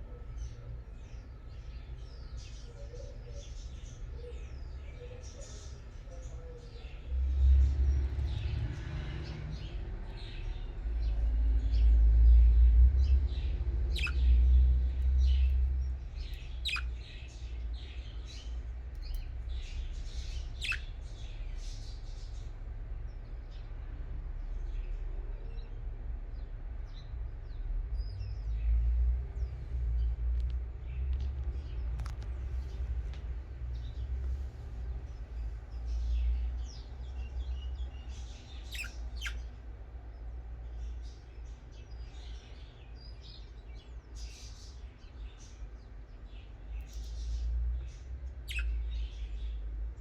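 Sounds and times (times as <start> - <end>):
budgerigars chirping: 13.3 - 22.3, 35.8 - 39.6, 46.8 - 49.6
sharp falling bird calls: 16.2 - 17.2, 38.6 - 39.5.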